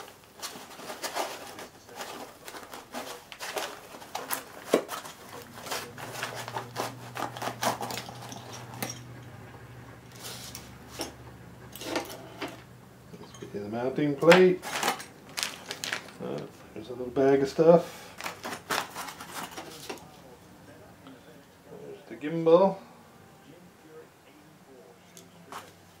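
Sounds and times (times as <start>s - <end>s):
packaging crinkling and rustling: 0.0s - 8.8s, 14.2s - 16.6s, 18.1s - 20.2s.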